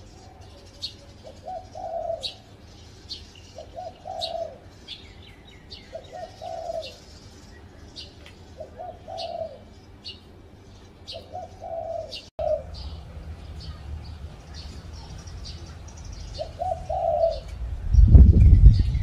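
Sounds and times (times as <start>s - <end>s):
small birds chirping: 0.0s - 19.0s
dove cooing: 0.2s - 2.5s, 3.6s - 4.8s, 5.8s - 7.1s, 8.6s - 9.7s, 11.1s - 12.9s, 16.4s - 17.6s.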